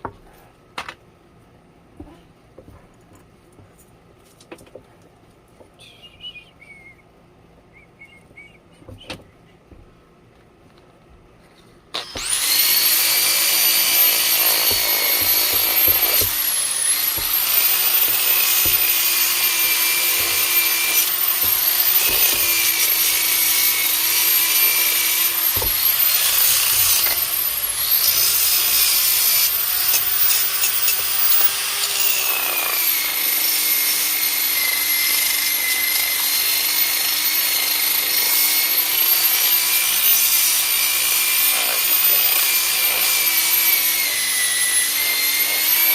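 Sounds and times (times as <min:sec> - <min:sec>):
power tool grinding wood: 0:12.0 - 0:45.9.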